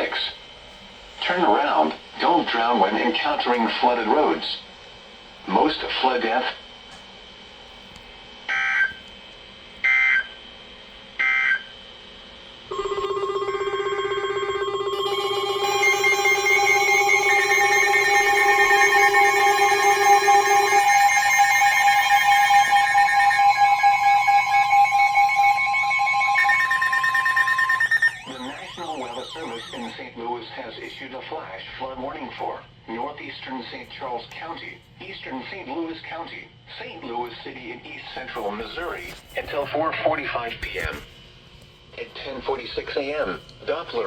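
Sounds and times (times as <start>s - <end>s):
electronic alert tone: 12.7s - 30.0s
short data bursts: 15.0s - 30.0s.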